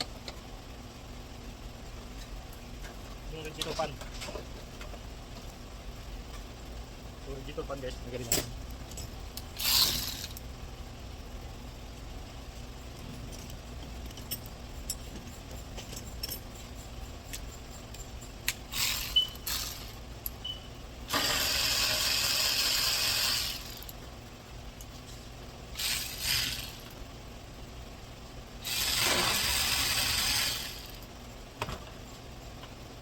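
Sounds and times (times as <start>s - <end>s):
metal tools clicking and clinking: 12.9s - 20.4s.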